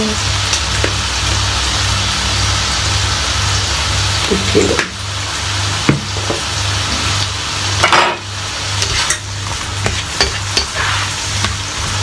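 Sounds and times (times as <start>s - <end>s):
bacon sizzling in a pan: 0.0s - 12.0s
utensil scraping pan: 9.8s - 11.6s.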